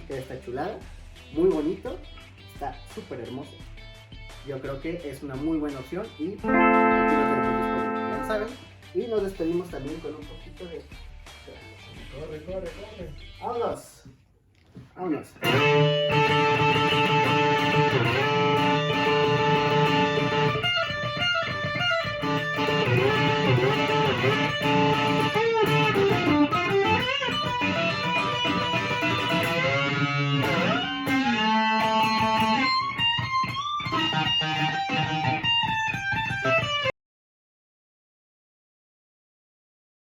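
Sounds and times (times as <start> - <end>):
electric ukulele lead line: 6.4 - 8.6, 15.4 - 36.9.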